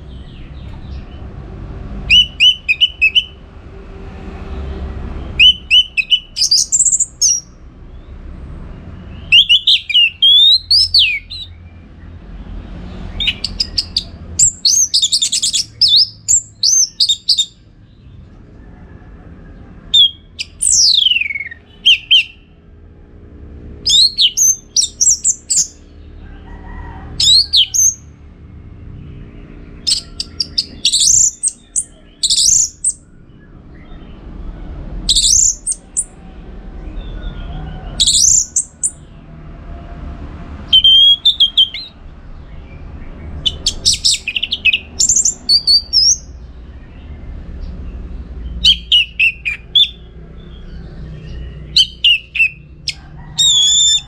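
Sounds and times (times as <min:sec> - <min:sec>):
thrush singing: 0:01.9 - 0:03.5, 0:04.2 - 0:07.6, 0:09.1 - 0:11.6, 0:12.8 - 0:17.7, 0:19.8 - 0:22.5, 0:23.7 - 0:25.9, 0:27.1 - 0:28.1, 0:29.6 - 0:33.6, 0:40.6 - 0:42.0, 0:42.9 - 0:46.4, 0:48.4 - 0:50.5, 0:51.4 - 0:54.0.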